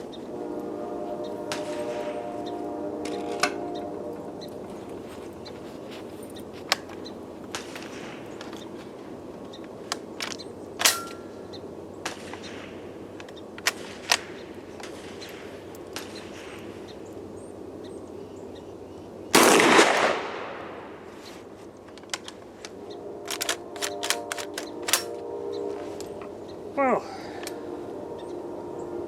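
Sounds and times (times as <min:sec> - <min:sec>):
shotgun shots echoing: 0:01.5 - 0:02.3, 0:12.0 - 0:12.8, 0:19.3 - 0:21.0
shotgun clicks: 0:19.4 - 0:20.6, 0:23.3 - 0:25.2.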